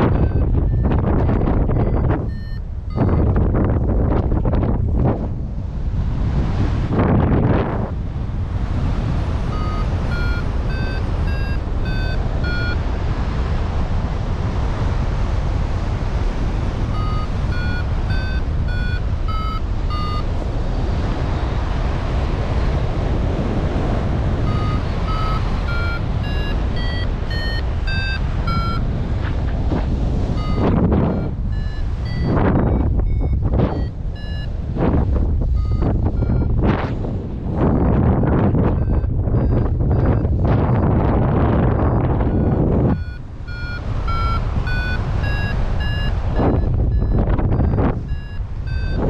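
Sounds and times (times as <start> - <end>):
variometer short beeps: 0.0 - 3.8, 9.4 - 12.9, 16.8 - 20.3, 24.4 - 37.0, 37.7 - 49.0
wind rush on microphone: 0.0 - 49.0.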